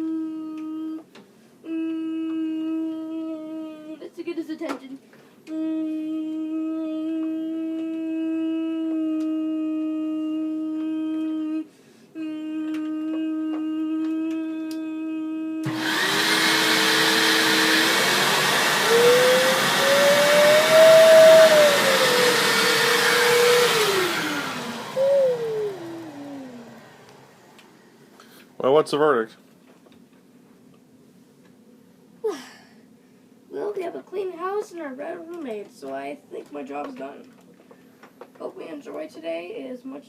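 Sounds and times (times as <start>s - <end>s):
vacuum cleaner running: 15.6s - 28.0s.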